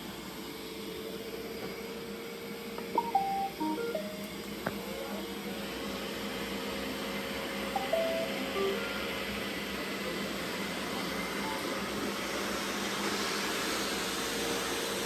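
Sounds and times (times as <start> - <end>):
robot vacuum cleaners whirring: 0.0 - 15.0
faint hum: 2.7 - 5.6, 7.7 - 9.5.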